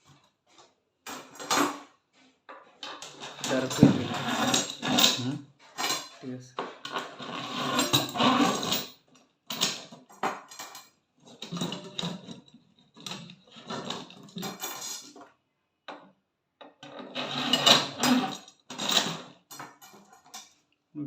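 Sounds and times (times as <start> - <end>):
metal parts clinking: 13.0 - 15.2.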